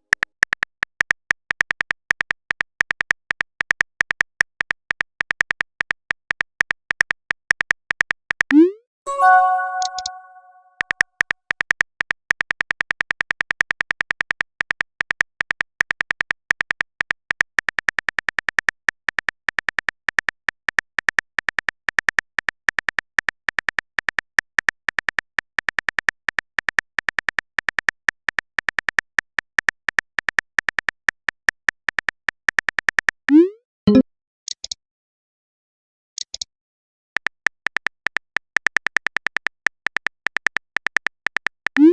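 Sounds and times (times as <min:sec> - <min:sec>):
keyboard typing clicks: 0:08.5 - 0:10.7, 0:33.3 - 0:34.8.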